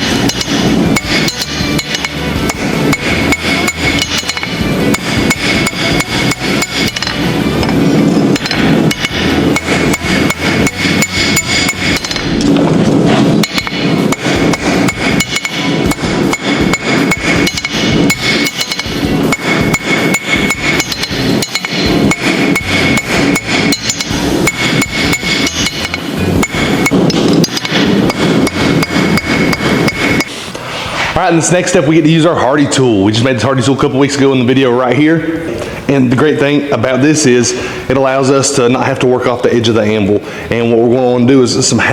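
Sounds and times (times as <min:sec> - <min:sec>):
hammer striking steel on anvil: 0:00.0 - 0:30.5
metallic ringing: 0:00.0 - 0:30.6.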